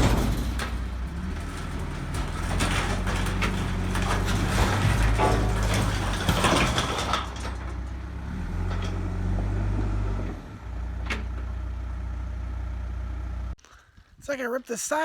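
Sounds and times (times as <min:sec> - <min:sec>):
diesel engine running: 0:00.0 - 0:13.6.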